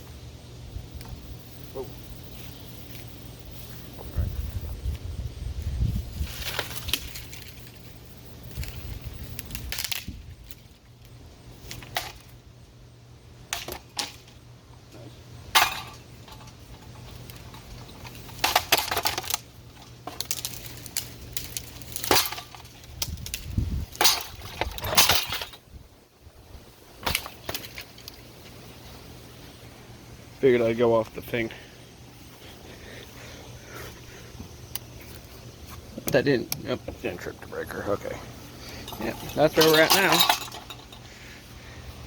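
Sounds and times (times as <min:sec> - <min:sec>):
low steady hum: 0:00.0 - 0:42.0
ceiling fan being smashed: 0:06.2 - 0:07.8, 0:08.5 - 0:10.6, 0:13.5 - 0:14.4, 0:15.5 - 0:25.6, 0:27.0 - 0:27.8, 0:39.0 - 0:41.0.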